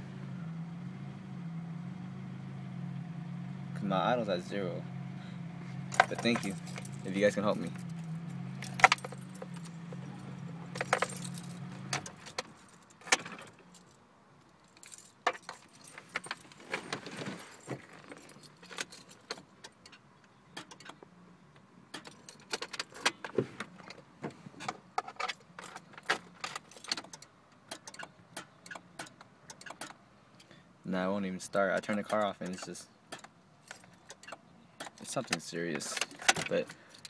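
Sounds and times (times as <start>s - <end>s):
car engine low hum: 0.0s - 37.0s
keys jangling: 5.9s - 14.0s, 14.6s - 20.0s.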